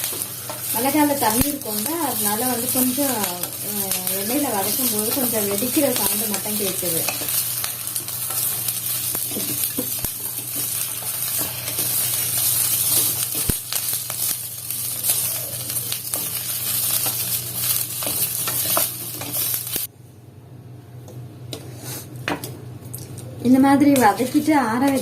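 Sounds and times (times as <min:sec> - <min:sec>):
chillies sizzling in hot oil: 0:00.0 - 0:19.9, 0:23.8 - 0:25.0.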